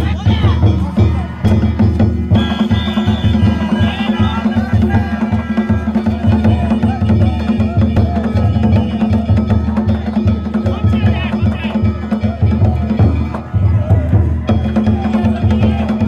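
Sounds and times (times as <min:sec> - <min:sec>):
taiko drums beating: 0:00.0 - 0:16.0.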